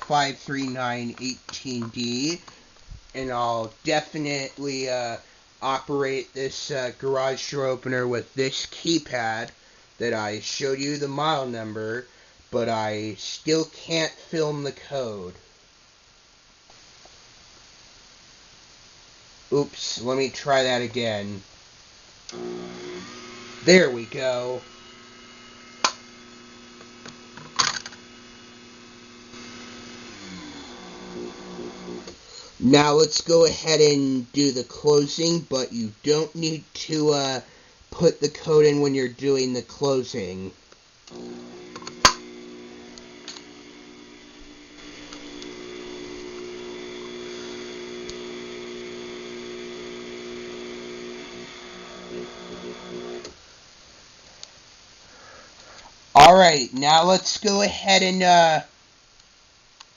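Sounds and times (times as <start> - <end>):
steady electric hum: 0.0 - 2.5, 3.1 - 55.1
garage door opener motor humming: 22.3 - 32.2, 41.1 - 53.4
garage door opener clicking: 41.1 - 43.8.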